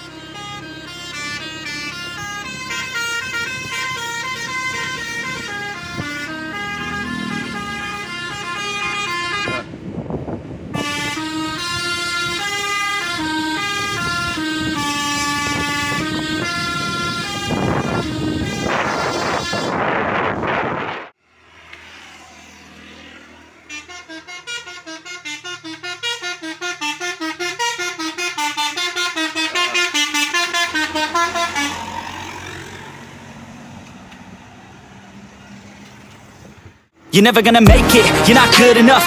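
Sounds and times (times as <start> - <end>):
bus musical horn playing tune: 0.0 - 10.0, 10.6 - 20.2, 23.6 - 32.8, 37.6 - 39.0
bus engine running: 0.0 - 39.0.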